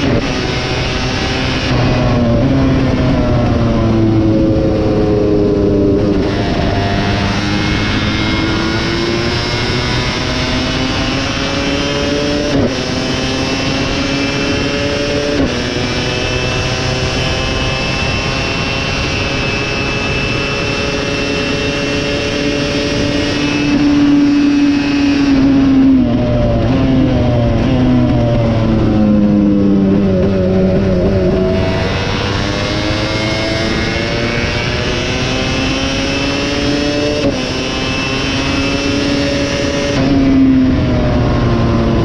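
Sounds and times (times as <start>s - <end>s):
motocross engine revving: 0.0s - 42.0s.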